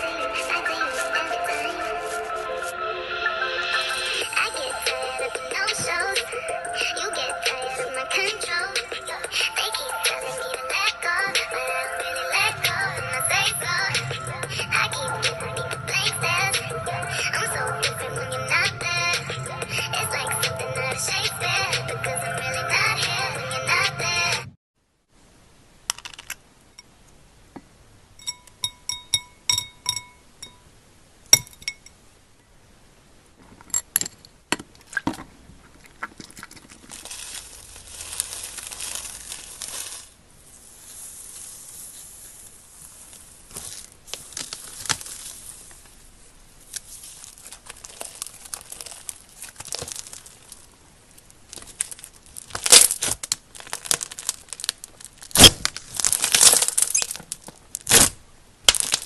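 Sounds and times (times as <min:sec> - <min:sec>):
slime crackling and popping: 0:36.1 - 0:40.2, 0:43.1 - 0:45.9, 0:46.6 - 0:59.0.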